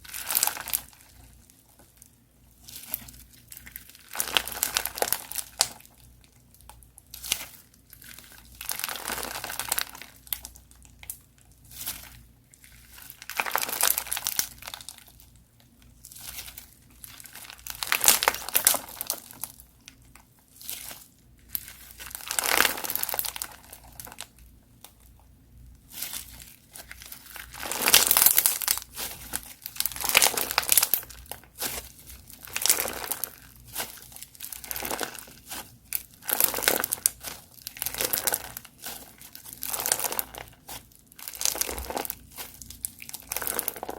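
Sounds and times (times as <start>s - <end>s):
crunchy slime crackling and popping: 0.0s - 43.9s.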